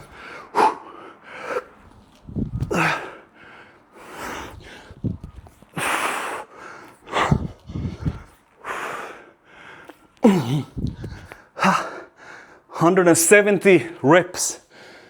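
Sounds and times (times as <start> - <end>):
man breathing hard: 0.0 - 1.9, 2.5 - 12.8, 14.6 - 15.0
man grunting with effort: 10.2 - 10.8.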